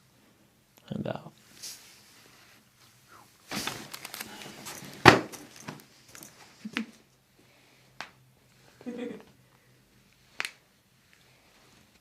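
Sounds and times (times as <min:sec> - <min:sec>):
rustling of patient being handled: 0:01.4 - 0:07.0.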